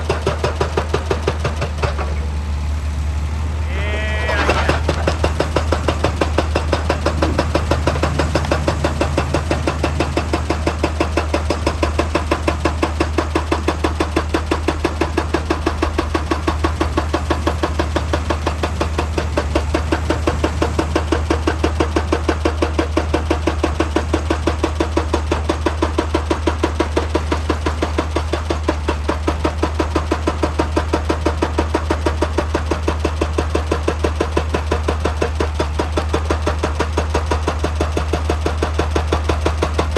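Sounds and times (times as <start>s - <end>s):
hydraulic breaker hammer pounding rock: 0.0s - 2.4s, 3.8s - 39.9s
diesel engine hum: 0.0s - 39.9s.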